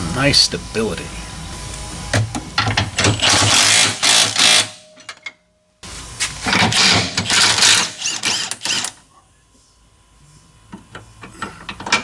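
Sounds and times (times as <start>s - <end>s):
impact wrench hammering: 2.7s - 4.8s.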